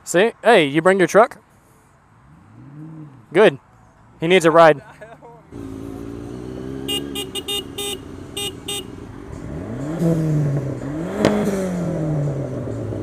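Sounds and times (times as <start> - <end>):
car engine revving: 5.5 - 13.0
car horn toots: 6.8 - 9.0.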